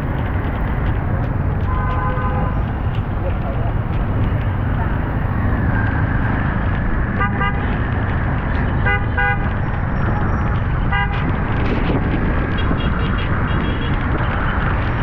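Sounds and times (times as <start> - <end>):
engines and road noise rumble: 0.0 - 15.0
vehicle horns tooting: 1.7 - 2.6, 7.2 - 7.8, 8.8 - 11.3, 12.6 - 14.6.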